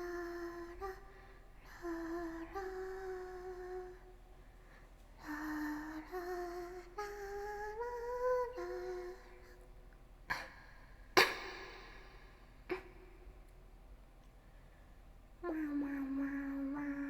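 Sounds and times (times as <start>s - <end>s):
woman humming a tune: 0.0s - 4.2s, 5.2s - 9.7s, 15.4s - 17.0s.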